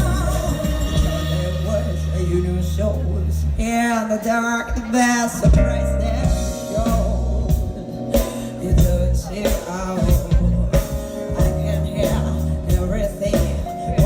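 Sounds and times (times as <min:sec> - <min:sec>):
band playing drums bass keyboards: 0:00.0 - 0:14.0
woman singing: 0:00.0 - 0:14.0.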